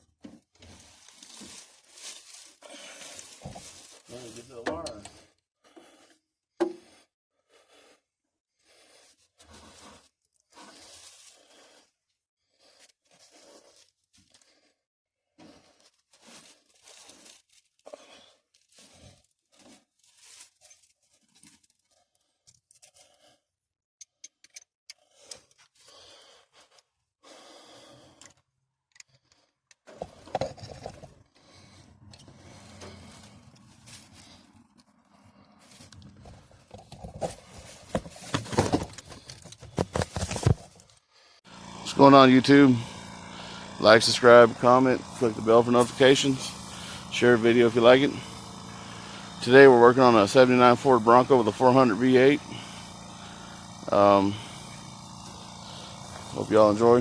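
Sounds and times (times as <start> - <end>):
hand tools scraping and clinking: 15.8 - 21.8, 29.0 - 31.4, 35.7 - 41.0.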